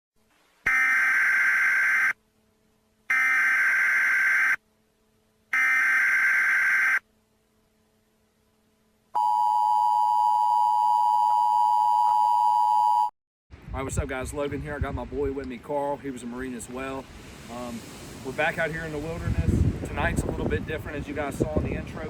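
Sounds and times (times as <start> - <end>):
screeching digital header bursts: 0.7 - 2.2, 3.1 - 4.6, 5.6 - 7.0.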